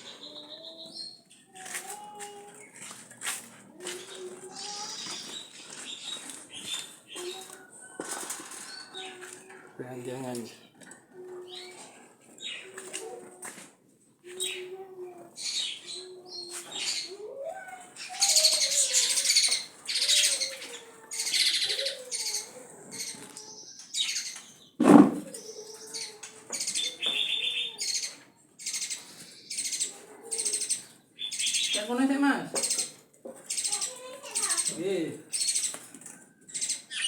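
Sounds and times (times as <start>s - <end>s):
songbirds chirping and singing: 0.0s - 37.0s
sharp knock: 24.8s - 25.3s.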